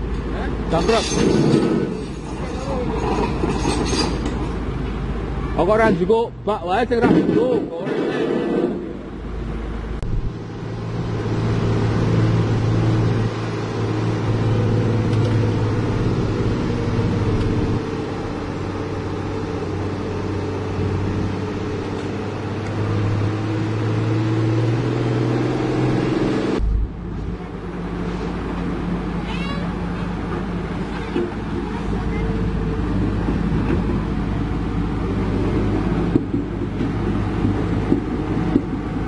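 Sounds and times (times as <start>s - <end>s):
truck diesel engine running: 9.0s - 39.0s.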